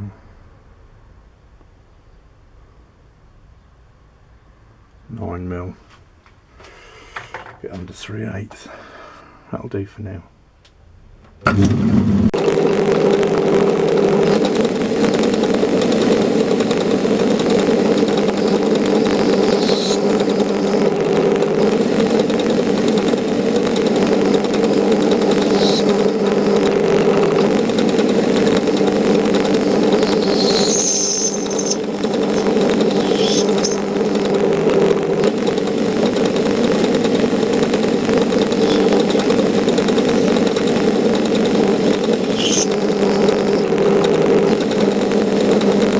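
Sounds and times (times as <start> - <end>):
metal lathe gear whine: 12.4 - 45.9
high-pitched squeaks: 17.4 - 21.0, 23.8 - 34.3, 38.3 - 43.7.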